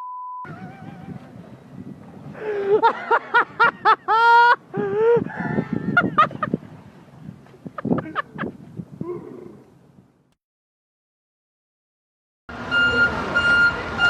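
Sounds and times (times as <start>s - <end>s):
people laughing and yelling: 0.5s - 1.4s, 2.4s - 6.4s.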